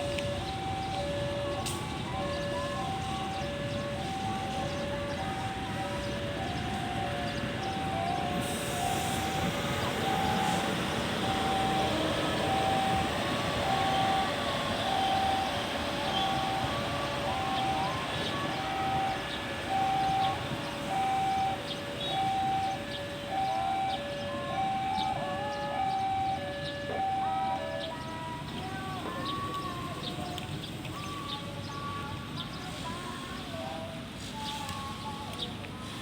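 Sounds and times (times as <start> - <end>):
two-tone electronic warning alarm: 0.0 - 28.5
train rushing noise: 1.6 - 31.3.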